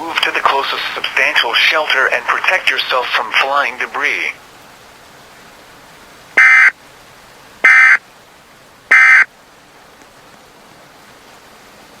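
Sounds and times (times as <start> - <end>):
digital data tone bursts: 6.4 - 6.7, 7.6 - 8.0, 8.9 - 9.3.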